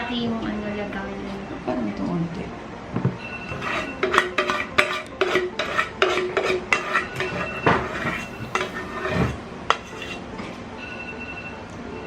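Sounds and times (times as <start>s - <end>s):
spoon clinking on metal molds: 3.5s - 10.2s.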